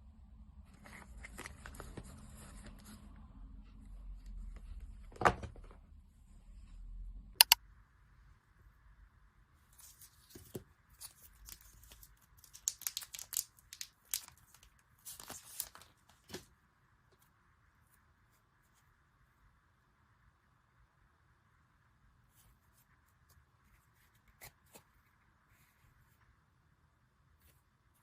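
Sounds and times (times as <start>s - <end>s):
sharp clicks: 7.4s - 7.6s
packaging tearing and crinkling: 11.0s - 15.9s.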